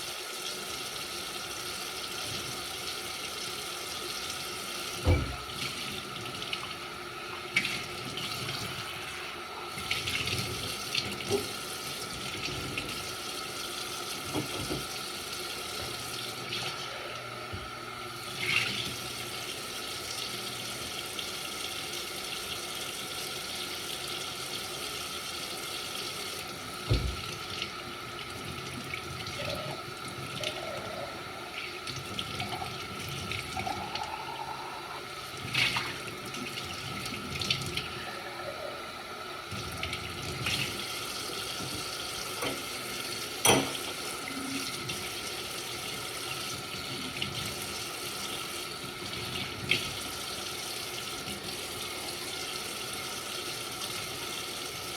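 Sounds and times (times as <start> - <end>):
tap water running into sink: 0.0 - 31.0, 31.6 - 38.0, 39.4 - 54.9
dishes knocking and clinking: 43.4 - 43.9.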